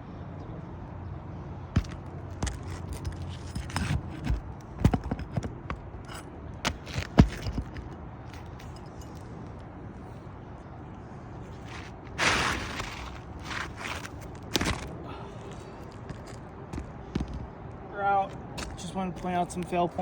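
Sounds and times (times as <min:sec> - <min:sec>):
knocks and scrapes on shingle roof: 0:01.8 - 0:08.7, 0:11.5 - 0:15.0.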